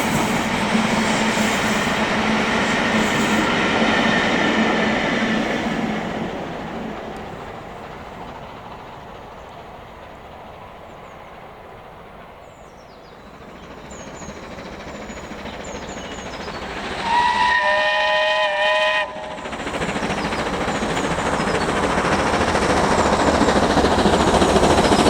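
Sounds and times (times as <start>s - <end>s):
steam locomotive rumble: 0.0s - 25.0s
steam locomotive chime whistle: 16.5s - 19.5s.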